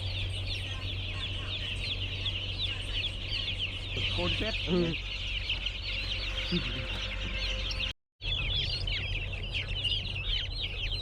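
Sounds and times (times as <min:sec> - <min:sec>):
chickens peeping: 0:00.0 - 0:11.0
low steady hum: 0:00.0 - 0:11.0.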